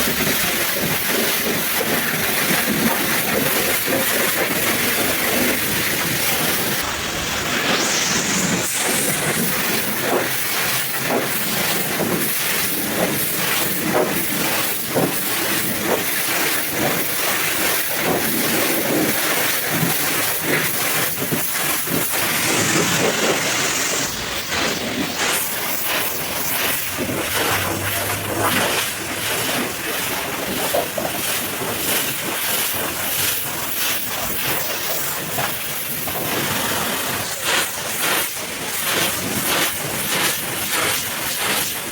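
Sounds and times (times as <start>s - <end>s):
pressure washer spray hissing: 1.6s - 14.9s, 18.3s - 30.6s.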